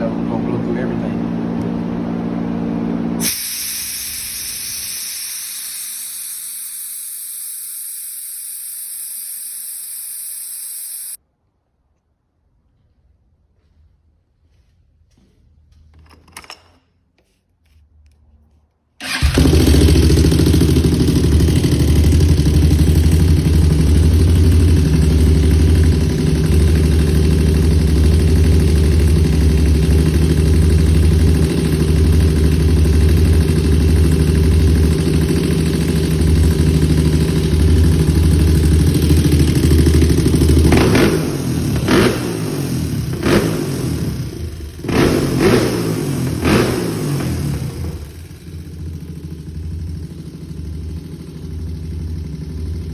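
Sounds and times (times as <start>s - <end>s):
atv engine idling and revving: 0.0s - 3.6s, 19.0s - 52.9s.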